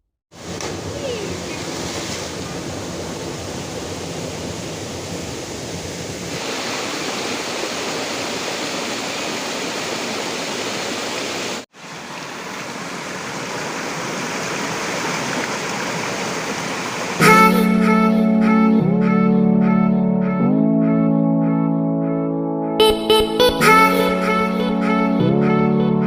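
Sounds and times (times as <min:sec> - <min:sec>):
waterfall rushing: 0:00.4 - 0:17.4.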